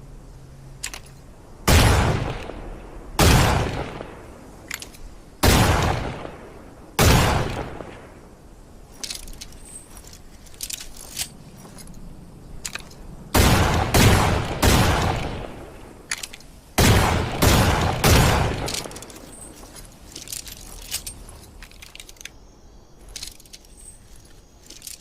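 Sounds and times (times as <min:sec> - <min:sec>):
metallic clicks and rattles: 0:00.8 - 0:01.3, 0:04.6 - 0:05.1, 0:08.9 - 0:13.1, 0:16.0 - 0:16.6, 0:18.6 - 0:22.4, 0:23.0 - 0:25.0
revolver gunshots: 0:01.6 - 0:04.3, 0:05.4 - 0:08.2, 0:13.3 - 0:15.9, 0:16.8 - 0:19.0.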